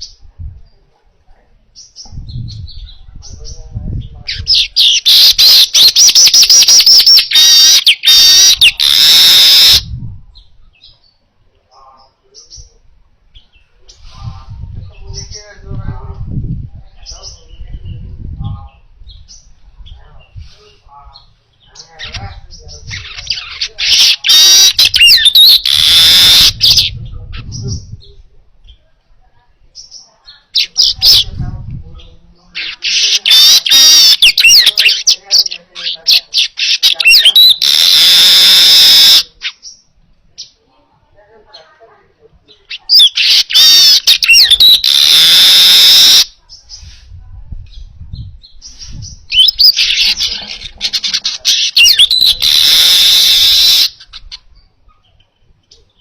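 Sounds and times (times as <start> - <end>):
bird chirping: 1.7 - 14.0, 16.9 - 28.9, 32.0 - 40.6, 42.5 - 46.9, 47.7 - 56.0
bird harsh buzzing: 4.4 - 9.9, 23.9 - 26.9, 32.9 - 35.0, 36.6 - 39.2, 43.0 - 46.3, 50.9 - 54.0.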